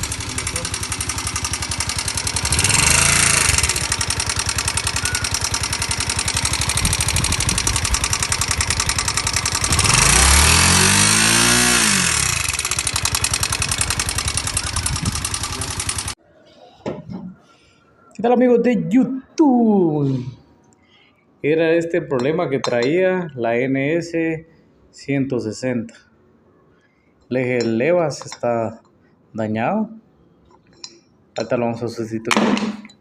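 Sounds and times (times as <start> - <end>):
motorcycle engine revving: 0.0 - 16.2
motorcycle engine ticking clatter: 0.0 - 16.2.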